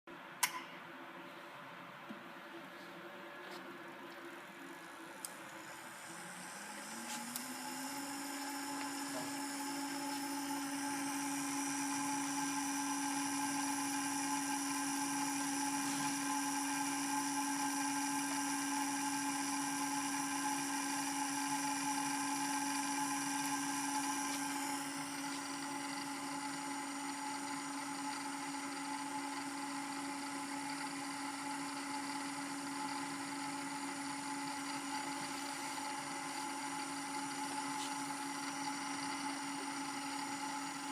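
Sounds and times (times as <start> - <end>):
servo motor whining: 6.0 - 12.7.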